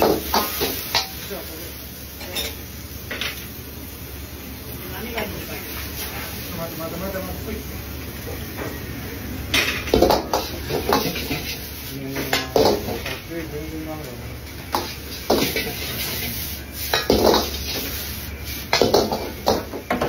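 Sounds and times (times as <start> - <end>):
dishes and utensils clinking: 2.2 - 3.5, 9.5 - 11.6, 16.9 - 17.9, 18.6 - 20.0.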